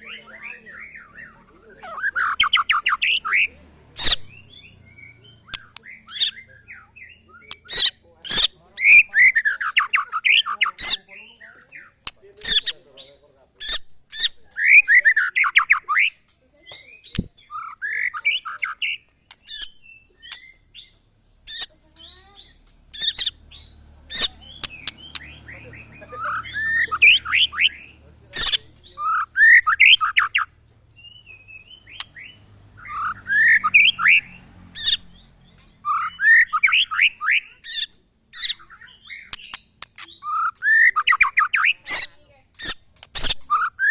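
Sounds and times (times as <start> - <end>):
bird singing whistled notes: 0.0 - 12.9, 14.5 - 21.0, 22.3 - 43.9
bird clicking calls: 1.8 - 4.5, 5.3 - 6.4, 7.2 - 11.0, 13.6 - 20.6, 21.5 - 30.6, 31.5 - 43.9.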